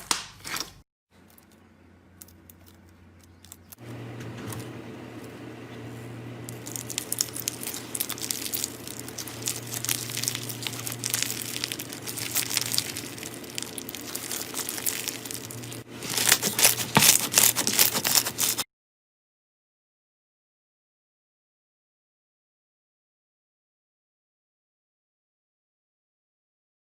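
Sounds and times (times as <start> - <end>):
slime squeezed by hand crackling: 6.5 - 18.6.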